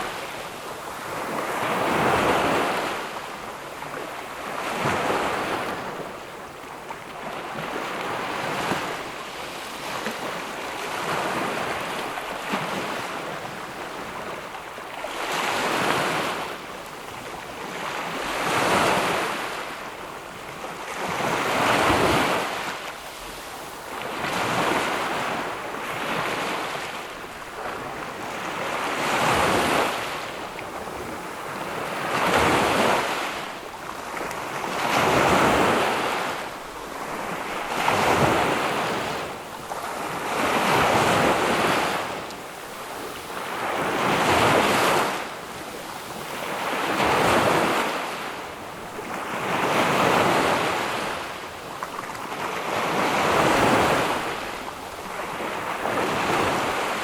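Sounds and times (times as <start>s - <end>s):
ocean waves breaking on beach: 0.0s - 57.0s.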